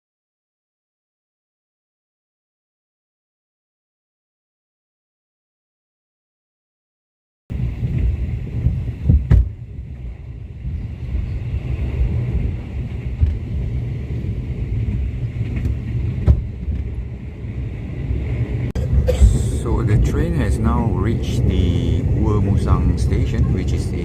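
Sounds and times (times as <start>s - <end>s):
train rumbling on board: 7.5s - 24.0s
sharp knocks: 9.1s - 9.6s, 16.2s - 16.9s.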